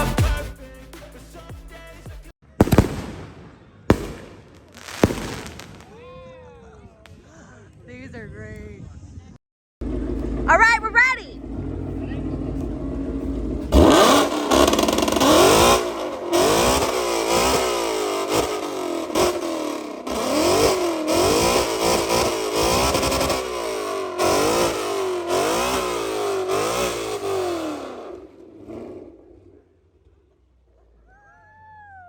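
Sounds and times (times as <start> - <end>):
sharp exhaust cracks: 2.6 - 5.9, 9.8 - 30.3
engine revving: 9.8 - 30.2.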